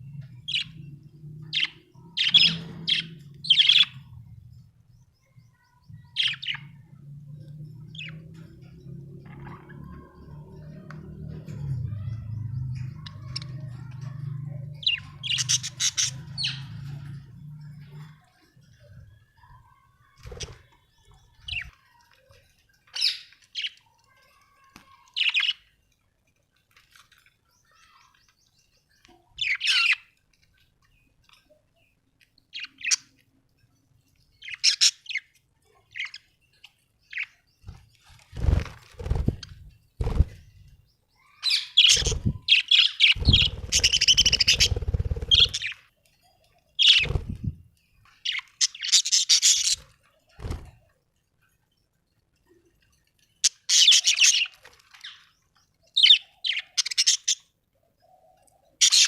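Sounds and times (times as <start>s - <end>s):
budgerigars chirping: 14.9s - 16.7s, 41.6s - 45.8s, 48.3s - 49.8s.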